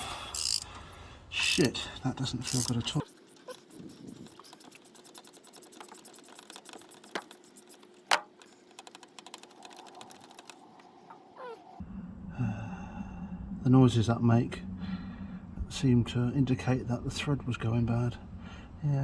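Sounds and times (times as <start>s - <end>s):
low steady hum: 0.0s - 3.1s, 10.6s - 19.0s
ratchet clicking and creaking: 0.0s - 10.6s.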